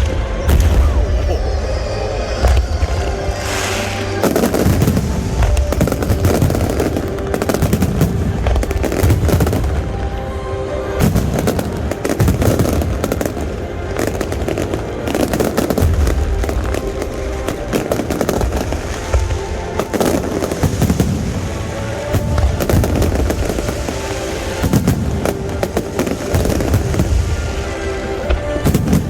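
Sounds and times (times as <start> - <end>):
deep fireworks booms: 0.0 - 29.0
fireworks banging and crackling: 0.0 - 29.0.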